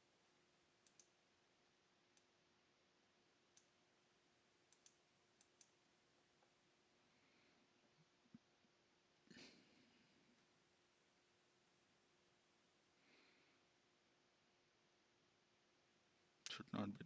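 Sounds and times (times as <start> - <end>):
low steady hum: 0.0 - 17.0
computer mouse clicks: 0.8 - 1.2, 3.5 - 3.8, 4.7 - 5.8.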